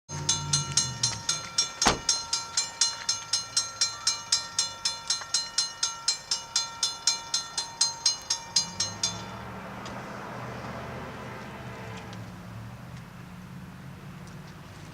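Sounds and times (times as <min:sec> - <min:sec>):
railroad crossing bell ringing: 0:00.1 - 0:10.4.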